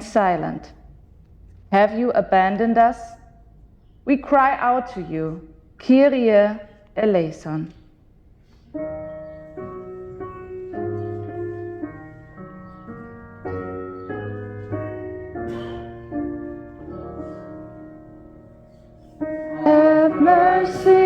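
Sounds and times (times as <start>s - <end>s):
piano playing slow chords: 8.7s - 21.0s.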